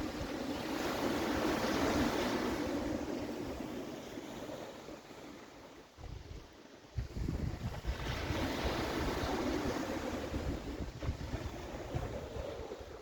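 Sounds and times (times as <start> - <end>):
wind buffeting microphone: 0.0 - 5.3, 6.0 - 13.0
waves washing on shore: 0.0 - 13.0.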